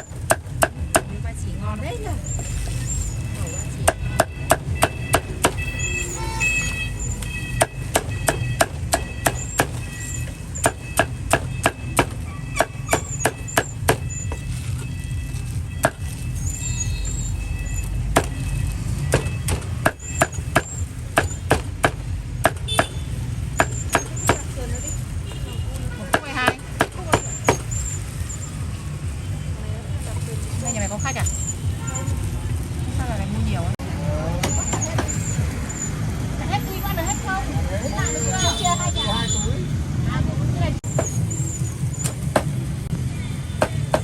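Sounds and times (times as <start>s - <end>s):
low traffic rumble: 0.0s - 44.0s
cleaver chopping meat: 3.8s - 5.7s, 7.5s - 9.8s, 10.6s - 14.1s, 15.8s - 16.0s, 19.1s - 23.0s, 23.6s - 24.6s, 26.1s - 27.7s.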